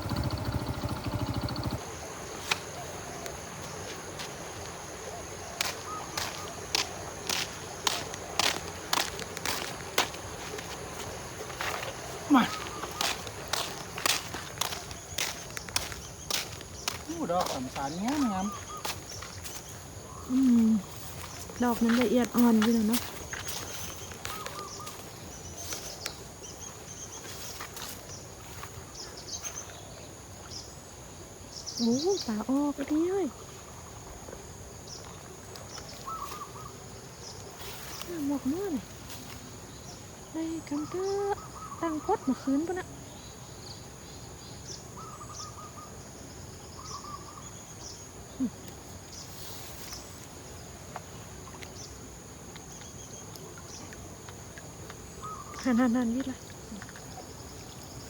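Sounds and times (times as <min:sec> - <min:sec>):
small birds chirping: 0:00.0 - 0:03.8, 0:05.5 - 0:30.7, 0:31.5 - 0:33.5, 0:34.8 - 0:46.0, 0:46.6 - 0:58.0
high insect drone: 0:00.0 - 0:58.0
short bird calls: 0:23.5 - 0:25.9, 0:36.0 - 0:36.8.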